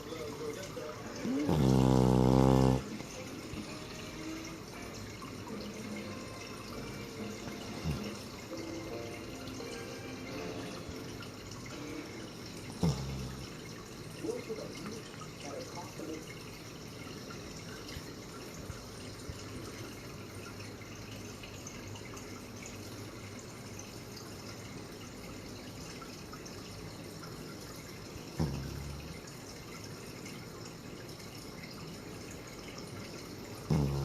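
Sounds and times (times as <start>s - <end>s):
small pet snoring: 1.2s - 3.0s, 7.7s - 8.2s, 12.7s - 13.6s, 28.4s - 29.3s, 33.7s - 34.0s.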